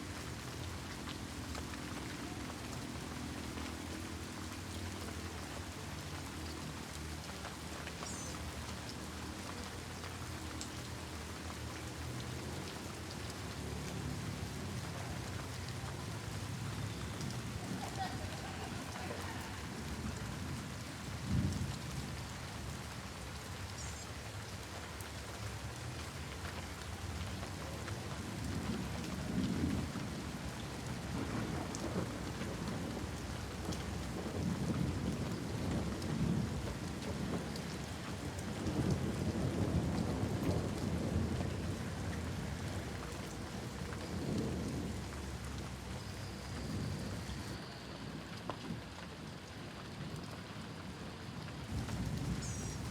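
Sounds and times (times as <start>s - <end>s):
steady rain falling: 0.0s - 52.9s
thunder rumbling: 27.4s - 48.8s, 51.6s - 52.9s.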